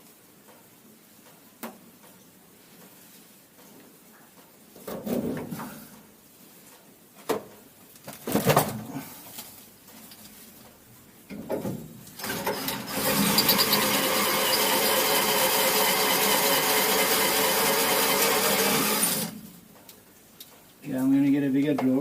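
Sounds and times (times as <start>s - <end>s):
electric drill whining: 12.2s - 19.4s.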